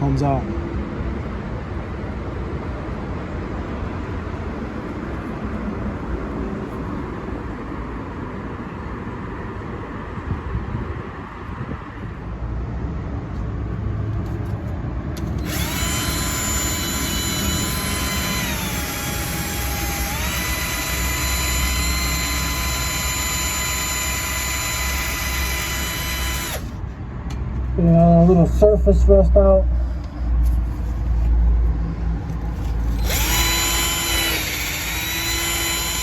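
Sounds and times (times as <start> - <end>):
wire brush power tool whine: 15.2 - 26.8, 32.6 - 36.0.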